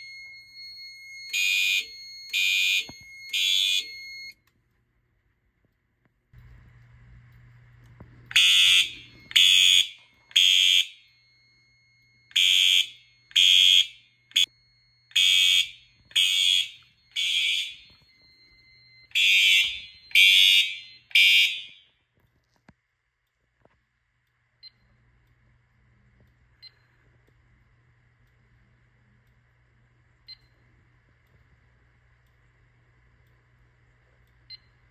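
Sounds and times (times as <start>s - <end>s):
fire alarm horn blasts: 0.0s - 4.4s, 8.3s - 14.5s, 15.1s - 22.1s.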